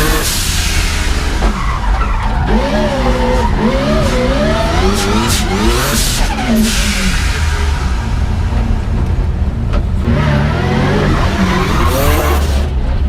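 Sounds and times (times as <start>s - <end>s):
car engine revving hard: 0.0s - 12.9s
tyres squealing: 10.2s - 12.7s.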